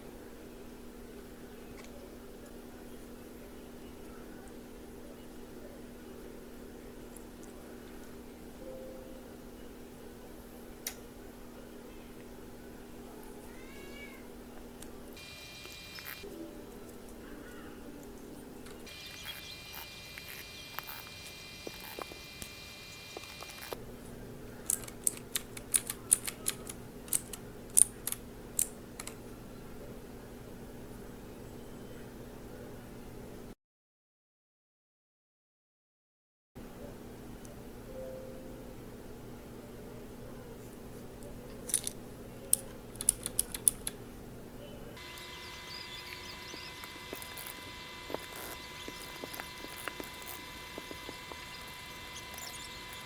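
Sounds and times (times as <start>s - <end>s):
faint high hum: 0.0s - 33.6s, 36.6s - 53.0s
mechanical keyboard keys clacking: 24.6s - 29.2s, 41.6s - 44.0s.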